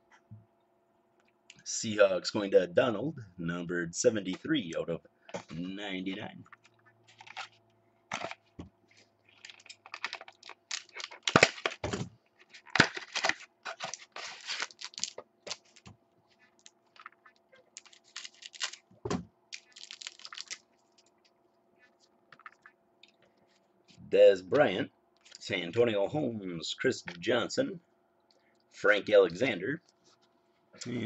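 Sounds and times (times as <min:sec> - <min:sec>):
foil card pack tearing and crackling: 0:09.3 - 0:11.8, 0:12.6 - 0:15.8, 0:17.8 - 0:18.8, 0:19.5 - 0:20.6.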